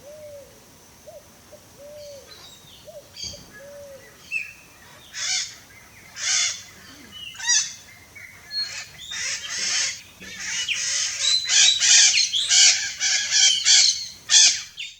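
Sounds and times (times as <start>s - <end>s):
macaws squawking: 5.1s - 14.9s.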